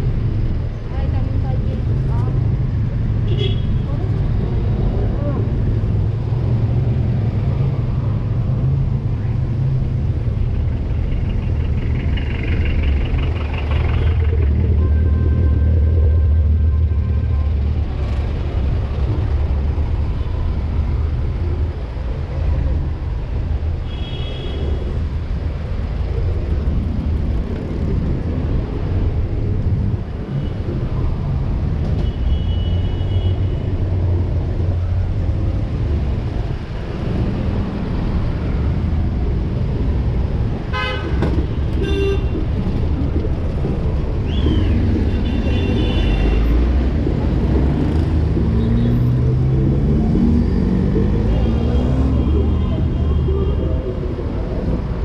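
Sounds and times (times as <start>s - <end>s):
rumble of passing vehicles: 0.0s - 55.0s.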